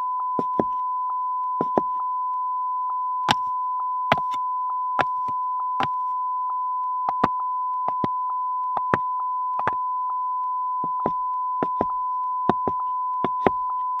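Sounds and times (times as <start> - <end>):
steady high beep tone: 0.0 - 14.0
wooden sandals clacking footsteps: 1.6 - 1.9, 4.1 - 4.4, 5.0 - 6.0, 8.8 - 9.0, 10.9 - 11.9, 12.5 - 13.6.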